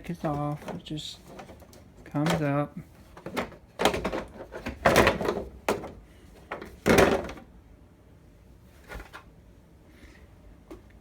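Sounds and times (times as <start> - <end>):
plastic cover scraping and knocking: 0.0 - 7.5.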